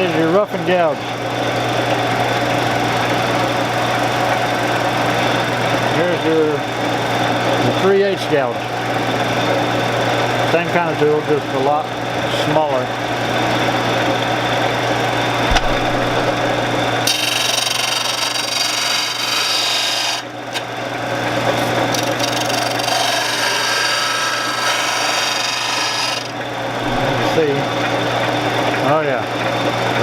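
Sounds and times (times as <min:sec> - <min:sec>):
machine motor running: 0:13.0 - 0:18.9, 0:20.5 - 0:30.0
harsh high grinding of steel: 0:15.3 - 0:20.3, 0:21.9 - 0:27.5.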